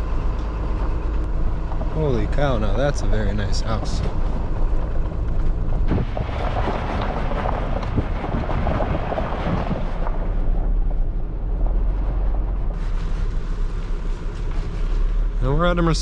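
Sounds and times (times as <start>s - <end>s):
truck engine and road rumble: 0.0s - 16.0s.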